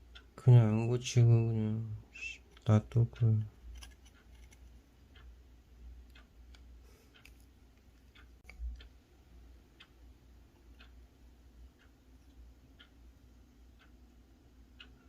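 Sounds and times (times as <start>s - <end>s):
low steady hum: 0.0s - 15.0s
faint light ticks: 6.0s - 9.0s, 9.8s - 11.0s, 11.6s - 13.0s, 14.7s - 15.0s.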